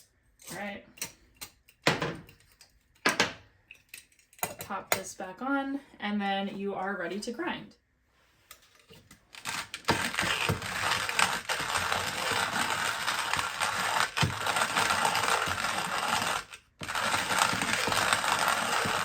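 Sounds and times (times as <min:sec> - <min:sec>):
coffee grinder grinding beans: 0:09.1 - 0:19.0
grinder clicks: 0:09.4 - 0:19.0.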